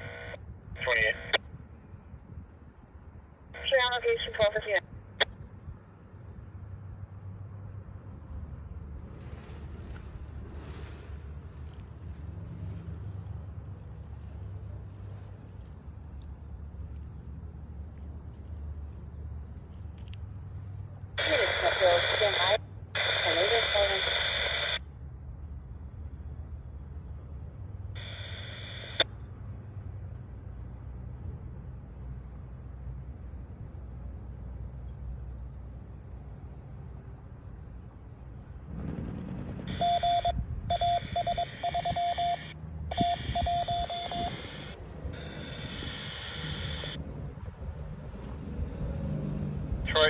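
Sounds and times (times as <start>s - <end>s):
stop-start radio tones: 0.0s - 1.4s, 21.2s - 24.8s, 28.0s - 29.0s, 39.7s - 47.0s
low background rumble: 0.0s - 50.0s
on-off beep: 39.8s - 44.7s.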